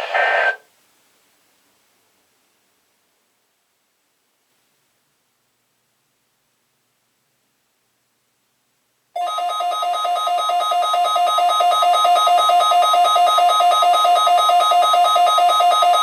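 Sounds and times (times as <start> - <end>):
warbling electronic alarm: 9.2 - 16.0.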